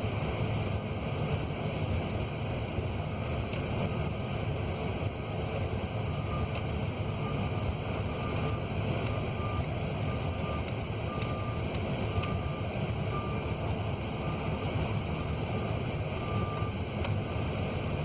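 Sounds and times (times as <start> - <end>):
faint reversing alarm beeps: 6.0 - 17.5.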